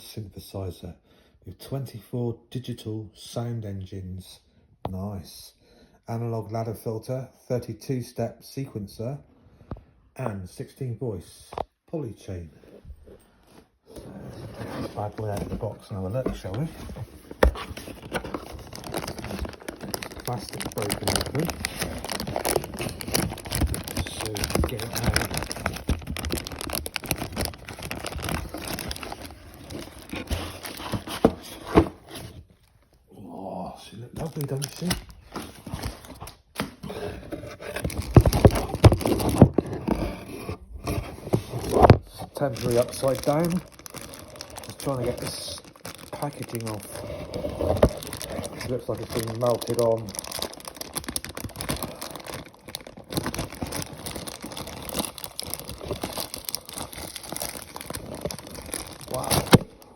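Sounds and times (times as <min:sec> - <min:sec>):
plastic packaging crinkling: 0:14.3 - 0:32.8, 0:34.2 - 0:36.6, 0:37.3 - 0:40.1, 0:40.8 - 0:59.9.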